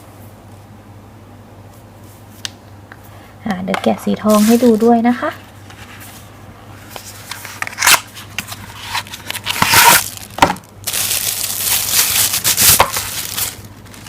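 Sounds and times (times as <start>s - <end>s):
packaging crinkling and rustling: 4.3s - 14.0s
packaging clicks and scrapes: 6.9s - 14.0s.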